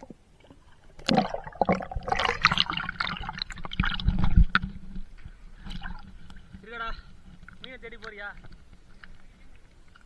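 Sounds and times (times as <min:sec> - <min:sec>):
water splashing and gurgling: 0:00.0 - 0:05.0.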